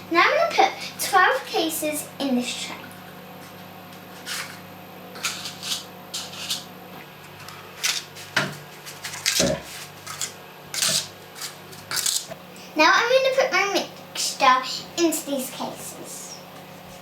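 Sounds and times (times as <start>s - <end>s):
paper rustling: 7.3s - 12.3s.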